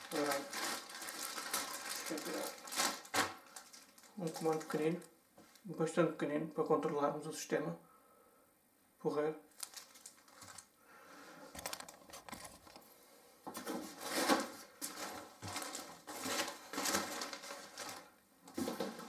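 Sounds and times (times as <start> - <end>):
packing material rustling: 0.0 - 5.6, 9.5 - 10.8, 11.5 - 12.8, 13.6 - 19.0.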